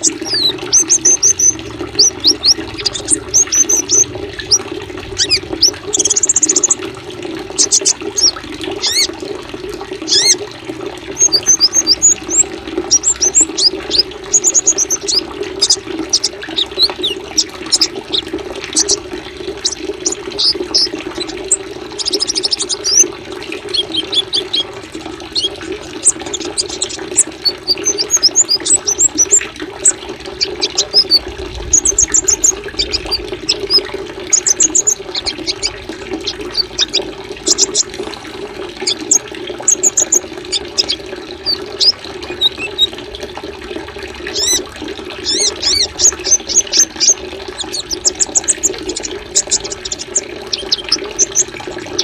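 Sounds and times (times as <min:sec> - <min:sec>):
songbirds chirping and trilling: 0:00.0 - 0:06.9, 0:07.5 - 0:09.2, 0:10.0 - 0:10.5, 0:11.1 - 0:43.3, 0:44.2 - 0:52.0
running water: 0:00.0 - 0:52.0.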